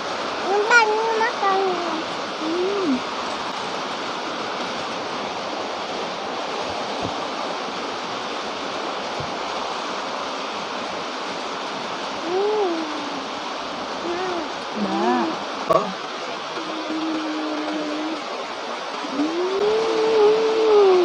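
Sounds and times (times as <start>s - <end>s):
steady rushing hiss: 0.0s - 21.0s
short vocal sound: 14.1s - 16.0s.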